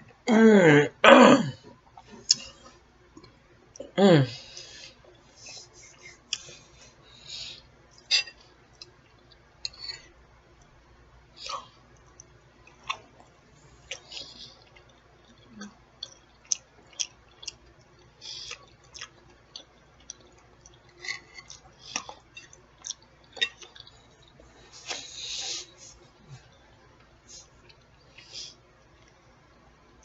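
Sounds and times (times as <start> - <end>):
chewing with wet lip smacks: 11.9 - 24.4.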